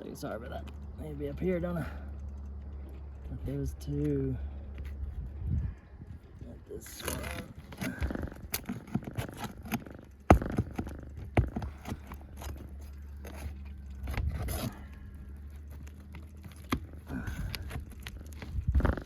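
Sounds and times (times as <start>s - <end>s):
hand tools scraping shingles: 6.8s - 19.0s.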